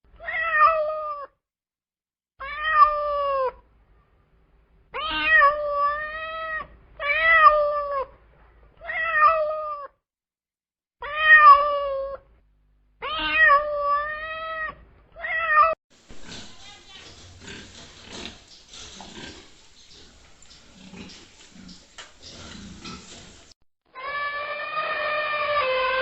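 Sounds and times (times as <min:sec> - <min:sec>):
cat meowing: 0:00.2 - 0:01.3, 0:02.4 - 0:03.6, 0:05.0 - 0:08.1, 0:08.8 - 0:09.9, 0:11.0 - 0:12.2, 0:13.0 - 0:15.8.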